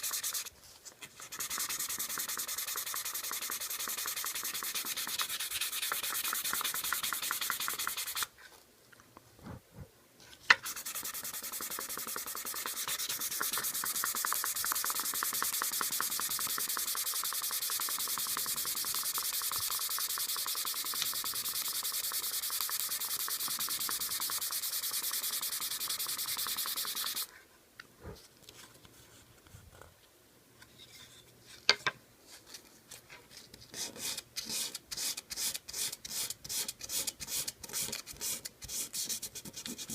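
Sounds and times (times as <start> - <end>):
back-and-forth rubbing strokes: 0.0 - 8.5, 10.6 - 27.3.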